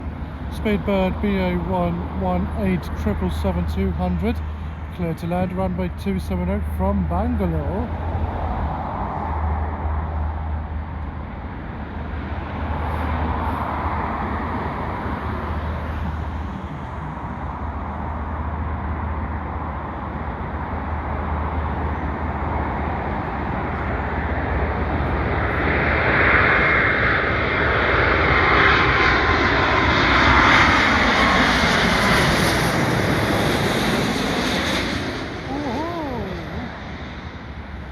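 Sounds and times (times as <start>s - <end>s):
jet engine whine: 0.0s - 6.7s, 7.3s - 35.4s.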